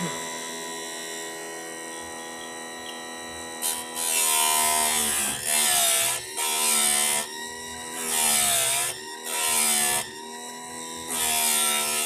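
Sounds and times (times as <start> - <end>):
sharpener motor whining: 0.0 - 12.0
grinding wheel rasping on chain: 3.6 - 12.0.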